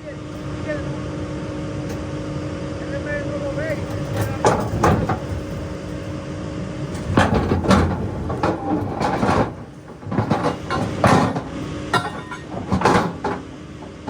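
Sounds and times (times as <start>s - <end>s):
engine hum: 0.0s - 14.0s
metallic clanks and knocks: 3.4s - 14.0s.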